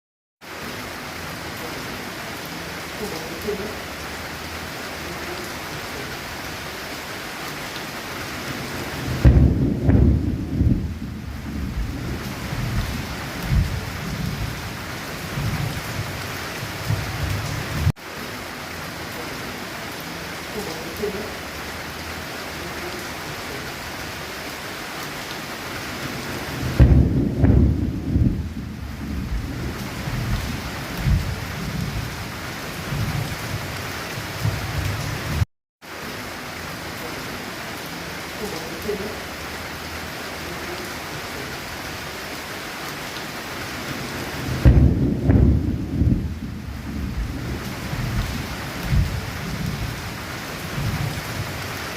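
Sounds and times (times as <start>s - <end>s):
heavy rain falling: 0.4s - 51.9s
low rumble of thunder: 8.9s - 17.9s, 26.4s - 35.4s, 44.2s - 51.7s.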